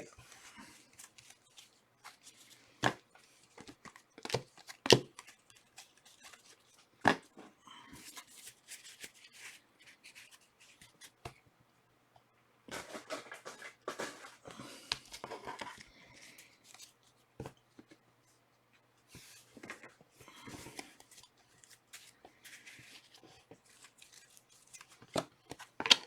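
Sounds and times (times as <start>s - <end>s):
trading cards rustling and clicking: 0.2s - 7.3s, 12.7s - 17.2s, 19.4s - 26.0s.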